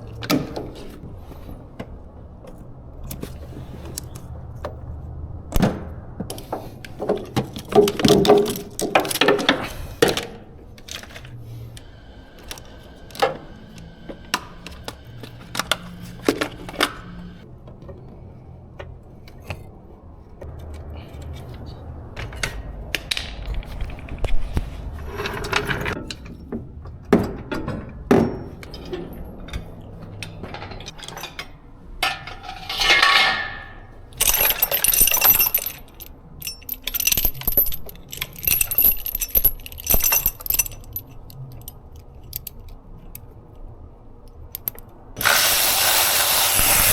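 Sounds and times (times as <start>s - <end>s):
metal tools clinking: 28.2s - 43.3s, 44.5s - 46.0s.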